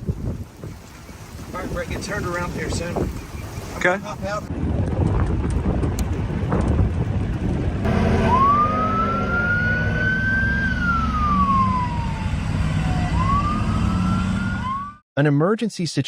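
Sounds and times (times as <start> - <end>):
siren wailing: 7.9 - 15.0.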